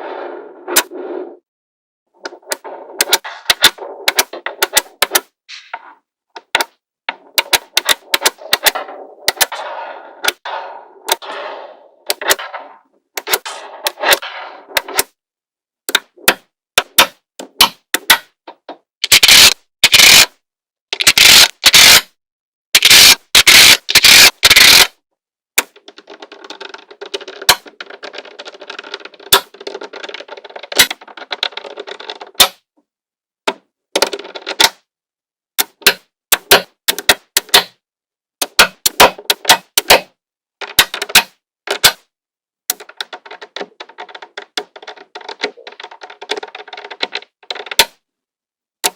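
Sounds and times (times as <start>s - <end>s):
balls rolling rattle: 2.2s - 15.2s, 25.7s - 32.4s, 34.0s - 34.6s, 42.7s - 47.8s
magnetic balls clicking together: 19.0s - 20.3s, 21.0s - 22.0s, 22.8s - 24.9s.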